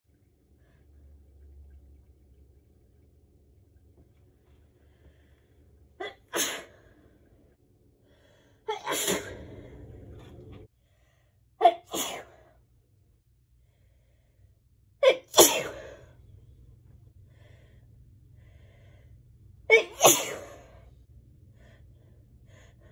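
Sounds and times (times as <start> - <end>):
person sneezing: 8.7 - 9.5, 11.6 - 12.4, 15.0 - 16.0, 19.7 - 20.8.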